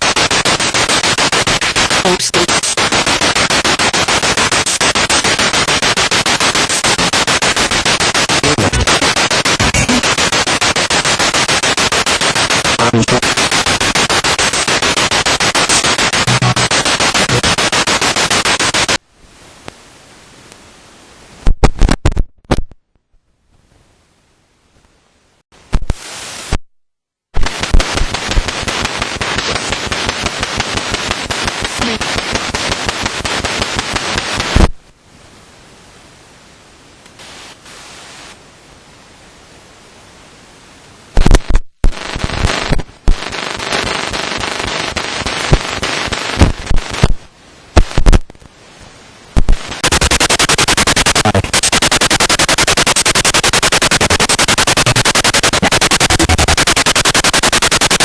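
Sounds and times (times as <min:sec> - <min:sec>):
rapid radio clicks: 0:00.0 - 0:19.0, 0:21.5 - 0:22.8, 0:27.4 - 0:34.7, 0:41.2 - 0:47.2, 0:47.8 - 0:48.5, 0:49.4 - 0:58.0
radio static and hiss: 0:00.0 - 0:22.8, 0:25.6 - 0:26.7, 0:27.4 - 0:35.0, 0:37.0 - 0:39.3, 0:40.8 - 0:58.0
low hiss: 0:19.0 - 0:21.9, 0:23.2 - 0:26.6, 0:27.4 - 0:58.0.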